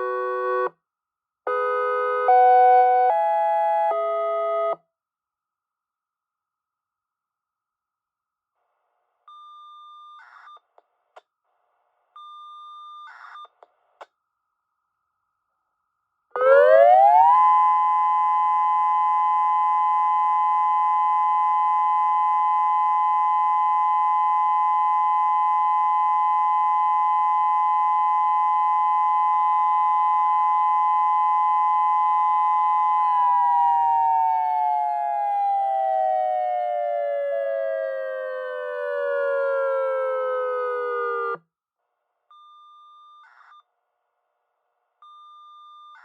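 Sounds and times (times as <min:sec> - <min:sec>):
electronic warning siren: 0:16.4 - 0:41.4.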